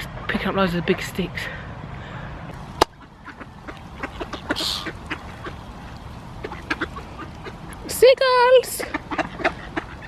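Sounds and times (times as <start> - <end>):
ducks quacking: 2.1 - 10.0.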